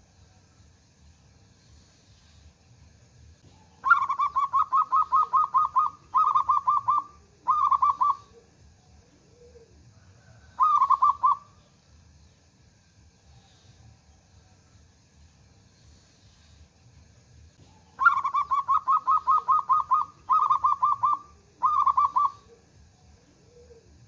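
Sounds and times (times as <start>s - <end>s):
dove cooing: 3.5s - 11.6s, 17.6s - 24.0s.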